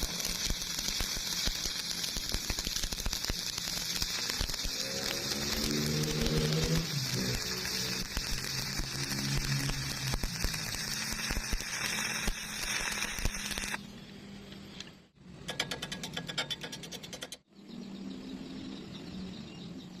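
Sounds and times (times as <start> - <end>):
welding arc crackling: 0.0 - 13.8.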